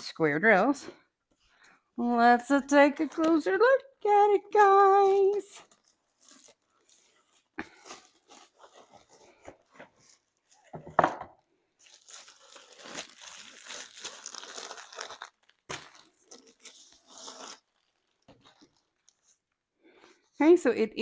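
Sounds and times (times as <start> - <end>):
plastic packaging crinkling: 2.4 - 10.8, 11.7 - 19.6.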